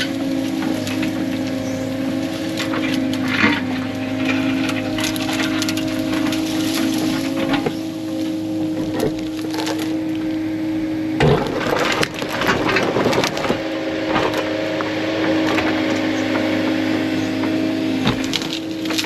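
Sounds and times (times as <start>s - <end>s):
brush crashing over: 0.0s - 10.3s
branches snapping and cracking: 0.0s - 10.5s, 11.2s - 19.0s
excavator diesel engine running: 0.0s - 19.0s.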